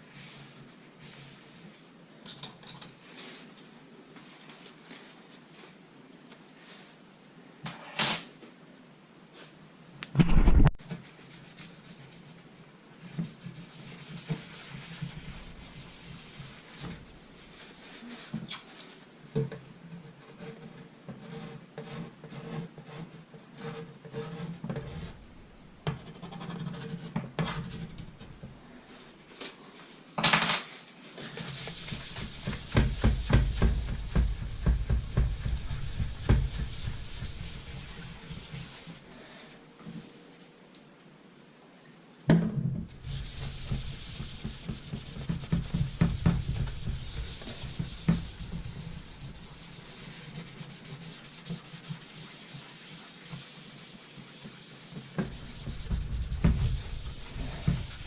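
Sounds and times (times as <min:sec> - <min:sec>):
rubbing and scraping adhesive residue: 0:13.1 - 0:18.9, 0:31.2 - 0:39.2, 0:42.9 - 0:58.0.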